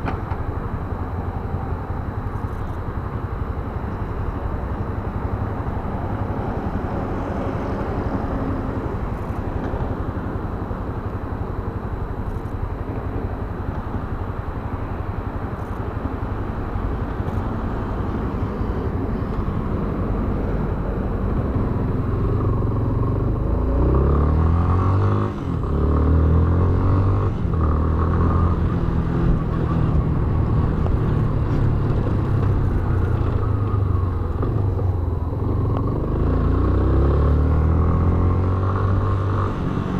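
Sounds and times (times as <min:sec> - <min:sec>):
wind and road noise: 0:00.0 - 0:39.9
motorcycle engine accelerating: 0:21.4 - 0:39.9.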